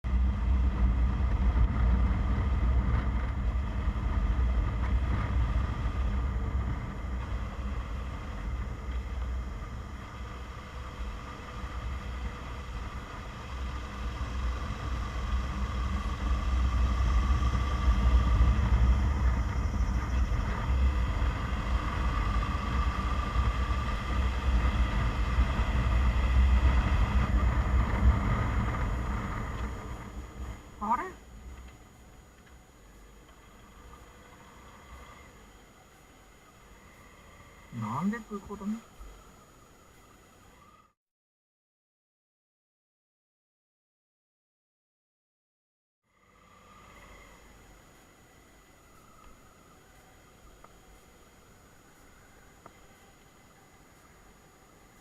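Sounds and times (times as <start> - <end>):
car engine and road rumble: 0.0 - 40.6.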